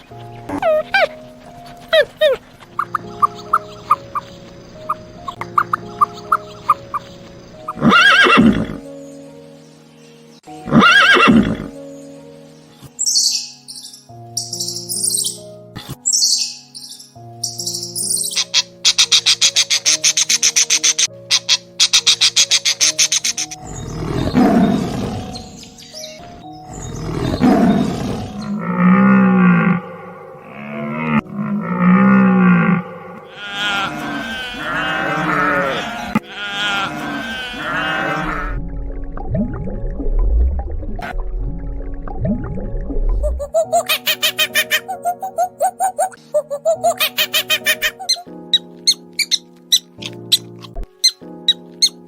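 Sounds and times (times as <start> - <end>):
background music: 0.0 - 52.0
horse whinnying: 7.8 - 8.8, 10.7 - 11.7
large animal roaring: 27.0 - 38.6
cow mooing: 28.6 - 38.6.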